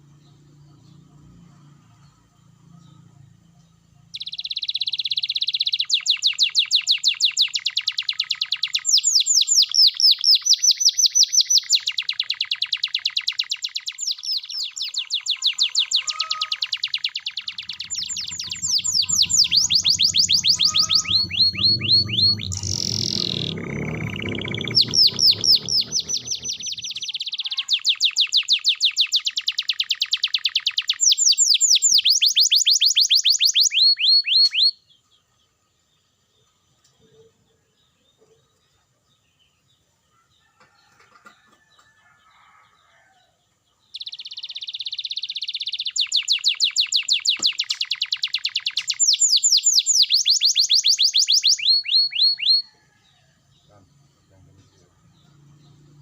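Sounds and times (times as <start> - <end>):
canary singing trills: 0.0 - 35.1, 43.8 - 56.0
low rumble: 17.5 - 27.0.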